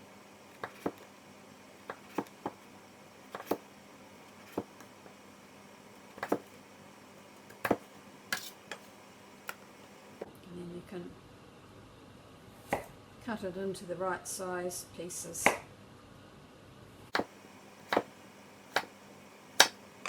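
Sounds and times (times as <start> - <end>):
knife chopping through pumpkin rind: 0.5 - 1.1, 1.8 - 5.2, 6.0 - 6.6, 7.4 - 9.6, 17.2 - 19.0, 19.6 - 19.8
knife knocking on chopping board: 1.9 - 2.6.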